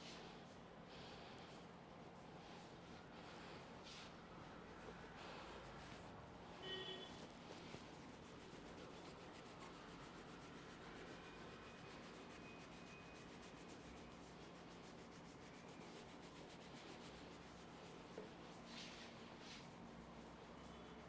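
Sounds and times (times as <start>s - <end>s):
rubbing on hair and skin: 4.8s - 21.0s.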